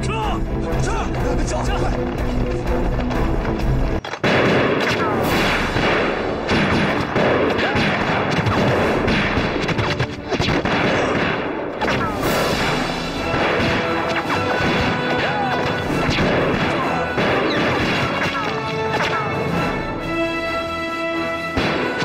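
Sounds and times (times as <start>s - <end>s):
rifle and machine-gun fire: 4.2s - 11.8s, 12.4s - 18.3s, 21.6s - 22.0s.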